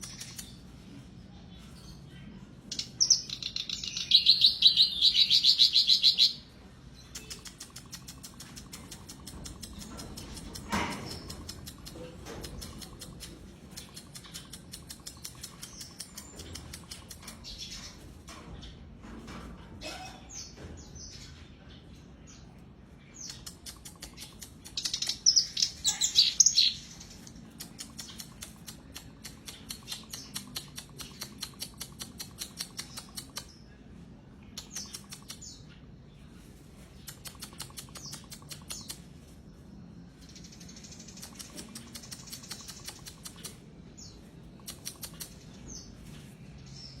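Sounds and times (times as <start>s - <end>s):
warbler harsh chattering song: 2.7s - 18.0s, 23.1s - 33.7s, 36.9s - 39.1s, 40.2s - 47.0s.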